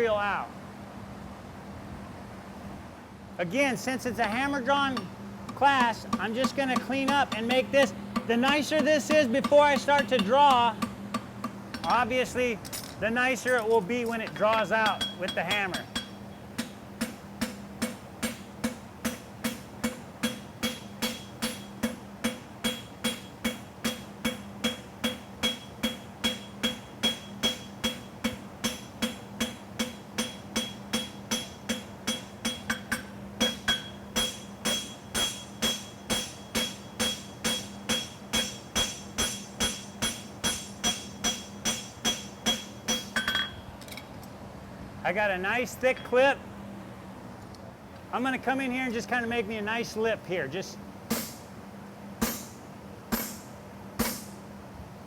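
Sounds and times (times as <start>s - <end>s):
hammer striking horseshoe on anvil: 4.3s - 12.1s, 12.7s - 43.6s, 51.1s - 51.5s, 52.2s - 54.4s.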